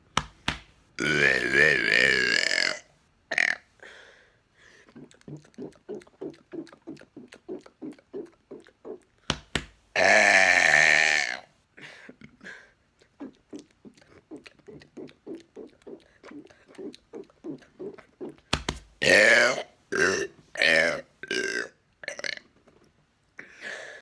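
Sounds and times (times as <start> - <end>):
man burping loudly: 1.0 - 3.6, 10.0 - 11.5, 19.0 - 22.4.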